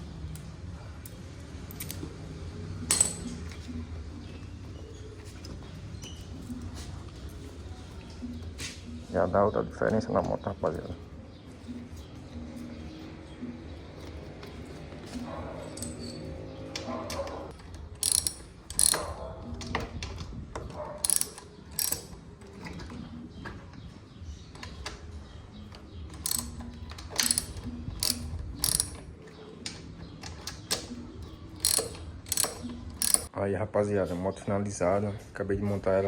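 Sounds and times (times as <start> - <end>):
wrench and metal parts clicking: 1.0 - 2.1, 2.9 - 3.5, 15.6 - 19.3, 21.0 - 22.8, 26.1 - 29.1, 30.1 - 33.3.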